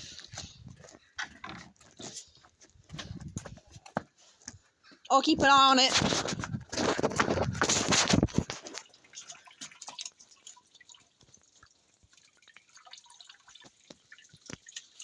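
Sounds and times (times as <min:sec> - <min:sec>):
water dripping and trickling: 0:07.3 - 0:15.0.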